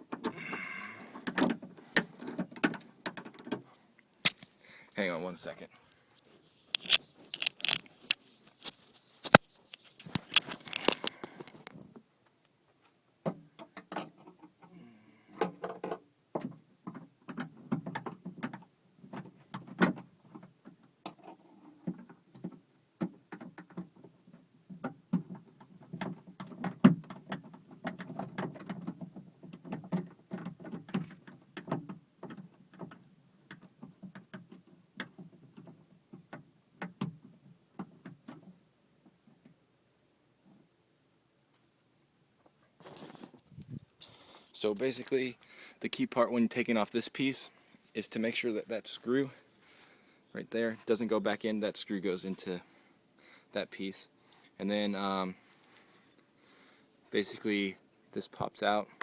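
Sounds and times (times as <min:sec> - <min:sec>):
screwdriver clicks and rattles: 0:06.6 - 0:11.7.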